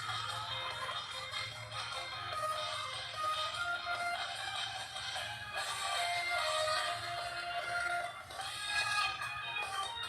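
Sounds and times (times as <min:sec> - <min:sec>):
melodic music with held tones: 0:00.0 - 0:10.0.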